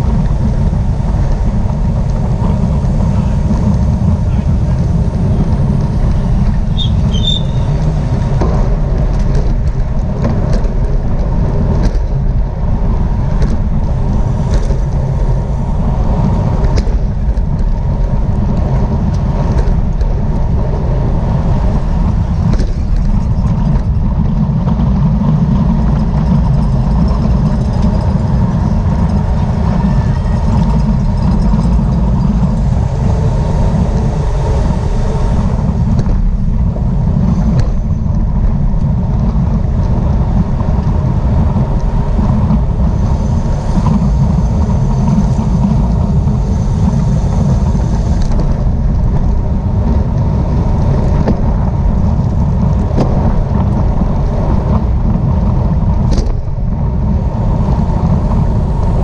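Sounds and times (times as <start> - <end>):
wind rumble on microphone: 0.0 - 59.0.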